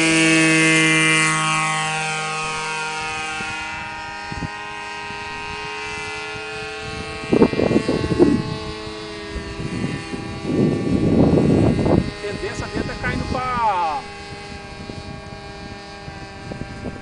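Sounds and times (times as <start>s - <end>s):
model airplane motor drone: 0.0s - 17.0s
rough bursts of noise: 11.7s - 17.0s.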